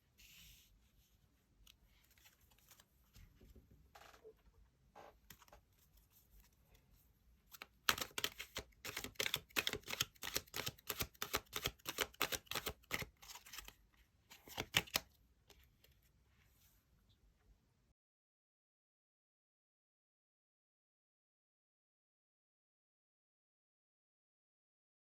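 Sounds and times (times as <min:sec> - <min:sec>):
cards being shuffled: 0:02.0 - 0:02.9, 0:07.5 - 0:15.1.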